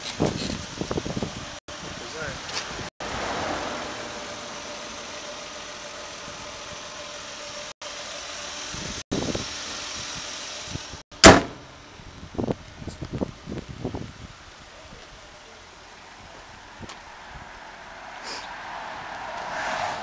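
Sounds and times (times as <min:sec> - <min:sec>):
car engine idling: 0:03.0 - 0:12.8, 0:14.3 - 0:18.0
loud slam: 0:11.2 - 0:11.8.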